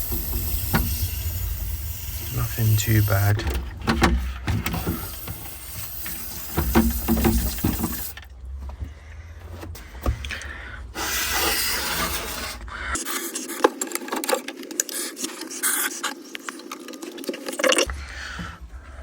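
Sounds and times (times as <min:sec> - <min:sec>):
water sprayer hissing: 0:00.0 - 0:08.3, 0:11.0 - 0:13.1.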